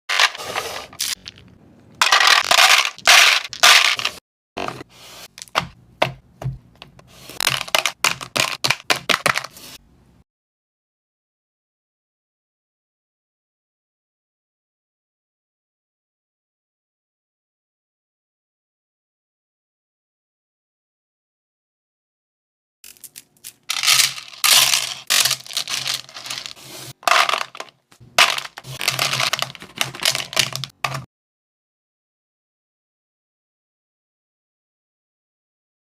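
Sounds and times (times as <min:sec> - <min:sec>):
hard candies clattering: 0:01.0 - 0:04.2, 0:07.4 - 0:09.5, 0:22.9 - 0:31.1.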